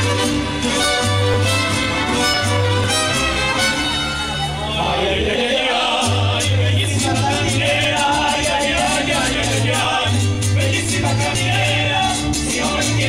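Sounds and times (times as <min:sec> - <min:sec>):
low bass guitar notes: 0:00.0 - 0:05.2
strummed guitars: 0:00.0 - 0:13.0
voices singing: 0:04.6 - 0:13.0.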